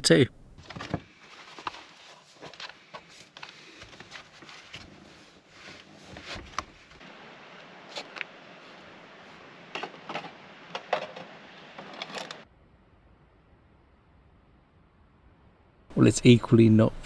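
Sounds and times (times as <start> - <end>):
steady hiss: 6.8 - 12.4.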